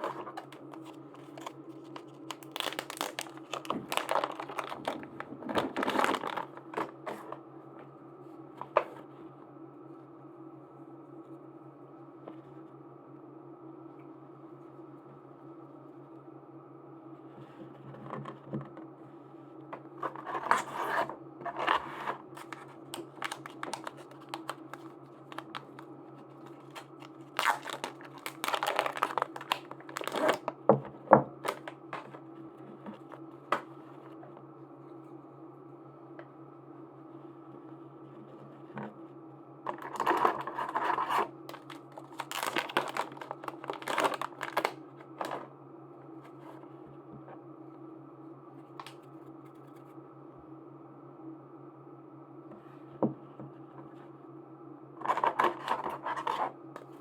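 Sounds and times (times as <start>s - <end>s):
plastic packaging crinkling: 0.0s - 7.3s, 21.5s - 30.6s, 31.4s - 32.2s, 39.7s - 45.5s, 55.0s - 57.0s
steady low hum: 0.0s - 57.0s.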